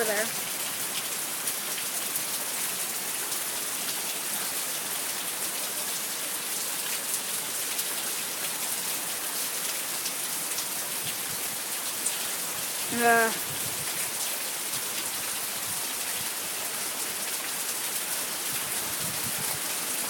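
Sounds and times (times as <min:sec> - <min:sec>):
heavy rain hiss: 0:00.0 - 0:20.0
raindrops ticking nearby: 0:00.0 - 0:20.0.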